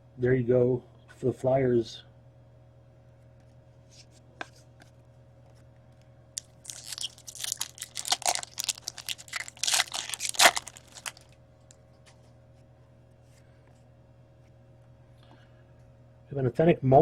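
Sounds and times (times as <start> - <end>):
foil wrapper tearing and crinkling: 6.4 - 11.4.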